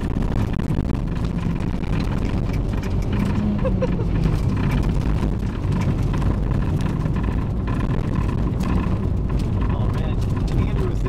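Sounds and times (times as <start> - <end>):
road and engine rumble: 0.0 - 11.0.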